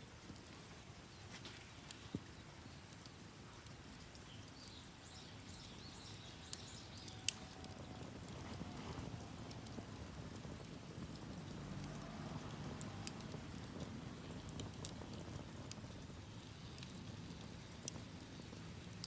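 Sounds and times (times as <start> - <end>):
wood fire crackling: 0.0 - 19.0
sharp fire pops: 6.0 - 19.0.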